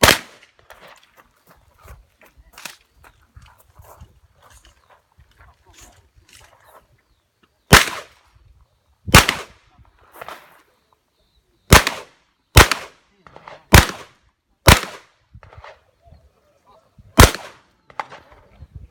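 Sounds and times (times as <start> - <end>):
shotgun shots: 0.0 - 0.5, 7.7 - 8.2, 9.1 - 9.6, 11.7 - 15.8, 17.2 - 18.3.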